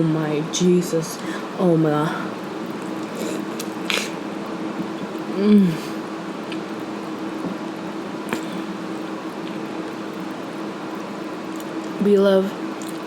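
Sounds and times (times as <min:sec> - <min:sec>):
steady low hum: 0:00.0 - 0:13.0
wet chewing: 0:02.6 - 0:04.2, 0:12.8 - 0:13.0
person humming mmm: 0:05.3 - 0:06.0.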